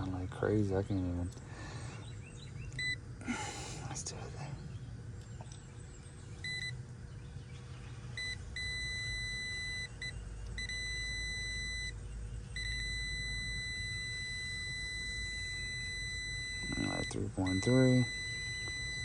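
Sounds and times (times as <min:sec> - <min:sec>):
low steady hum: 0:00.0 - 0:19.0
test meter beeping: 0:02.7 - 0:03.0, 0:06.4 - 0:06.8, 0:08.2 - 0:19.0.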